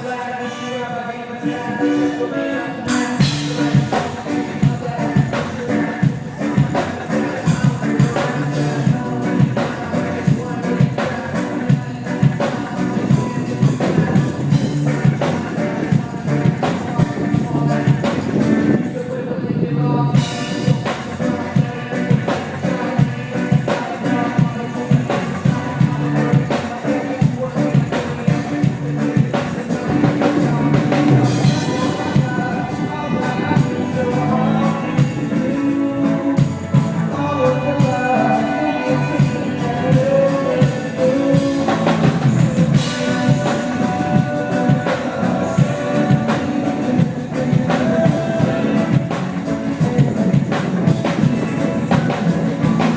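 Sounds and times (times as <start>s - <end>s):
electric guitar: 0.0s - 52.9s
person singing: 0.0s - 52.9s
bass guitar: 1.4s - 52.9s
drum kit beat: 2.8s - 18.8s, 20.2s - 52.9s.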